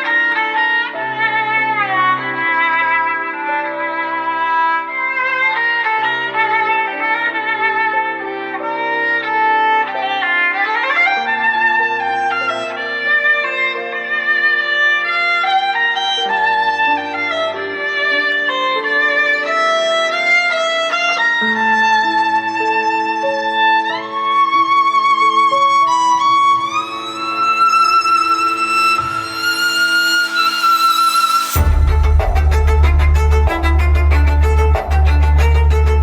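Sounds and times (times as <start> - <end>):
violin melody with vibrato: 0.0 - 36.0
held low string notes: 31.5 - 36.0.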